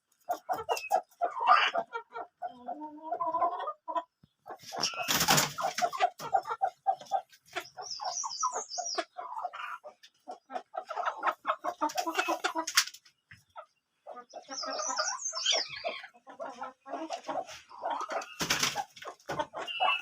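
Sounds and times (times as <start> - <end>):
chickens clucking: 0.0 - 20.0
high chirping calls: 4.6 - 5.7, 6.3 - 9.9, 14.1 - 16.2, 17.6 - 18.9, 19.5 - 20.0.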